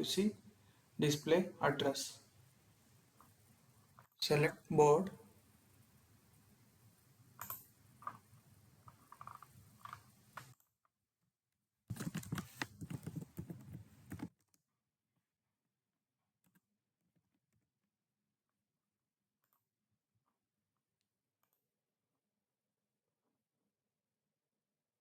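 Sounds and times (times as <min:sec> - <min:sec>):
faint hiss: 0:00.0 - 0:09.0
typing on computer keyboard: 0:07.4 - 0:08.2, 0:11.9 - 0:14.5.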